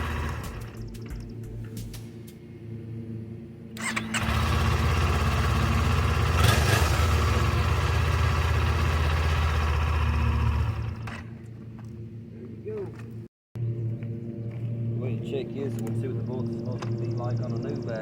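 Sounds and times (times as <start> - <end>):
motorcycle engine running: 0.0 - 2.0, 3.8 - 11.4.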